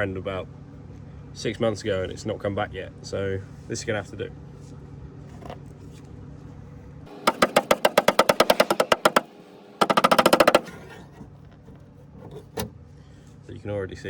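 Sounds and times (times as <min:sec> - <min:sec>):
hammer tapping on steel panel: 0:07.1 - 0:10.9.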